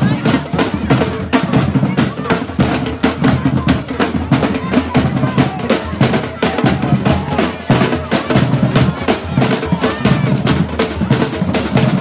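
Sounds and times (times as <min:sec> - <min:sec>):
snare drums: 0:00.0 - 0:12.0.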